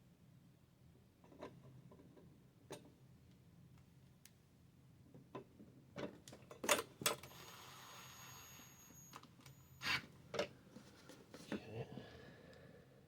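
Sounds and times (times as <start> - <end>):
faint steady whine: 7.2 - 12.8.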